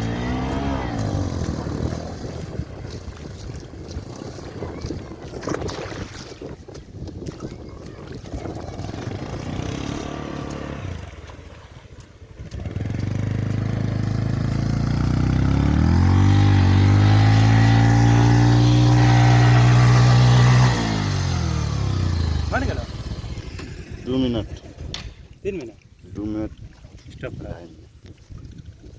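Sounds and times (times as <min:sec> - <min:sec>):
motorcycle engine revving: 0:00.0 - 0:03.0, 0:08.4 - 0:24.8.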